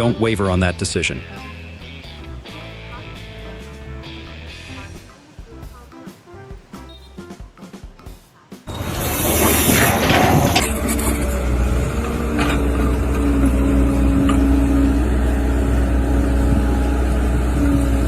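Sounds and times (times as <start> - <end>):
engine droning: 0.0 - 6.0, 8.7 - 18.0
loud rushing noise: 8.7 - 18.0.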